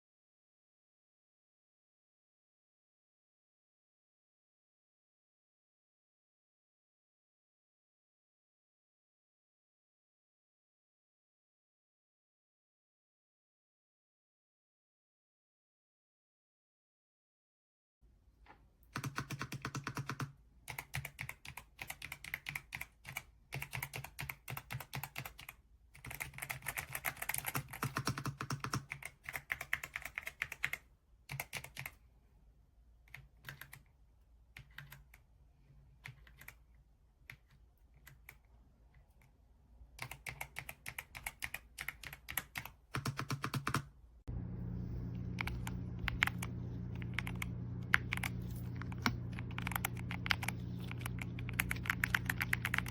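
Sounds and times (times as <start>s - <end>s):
mechanical keyboard typing: 19.0s - 32.0s, 33.1s - 33.9s, 34.6s - 35.2s, 36.0s - 36.6s, 40.0s - 43.9s, 45.4s - 52.9s
steady low hum: 44.3s - 52.9s.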